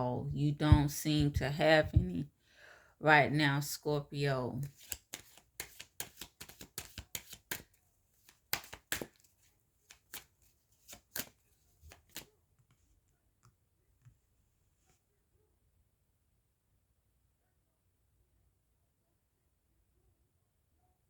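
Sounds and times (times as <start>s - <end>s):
cards being shuffled: 4.6s - 12.8s.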